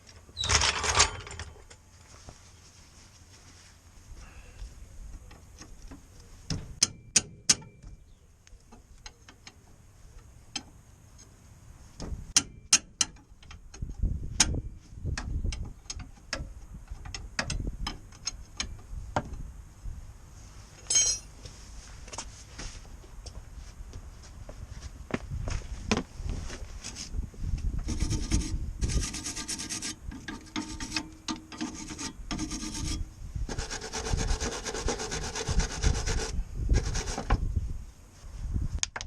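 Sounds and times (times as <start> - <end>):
bright metallic rattle: 0.4 - 1.8.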